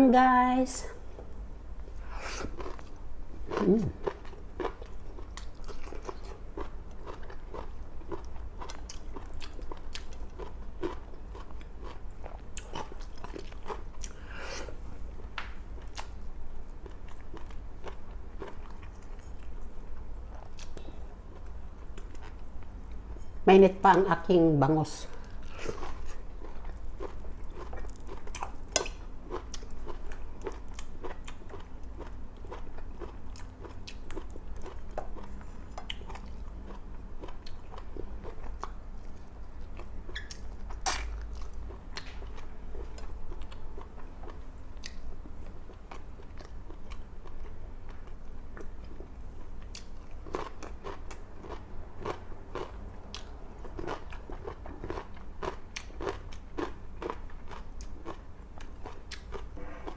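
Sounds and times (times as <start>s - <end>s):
person chewing and biting food: 2.1s - 14.8s.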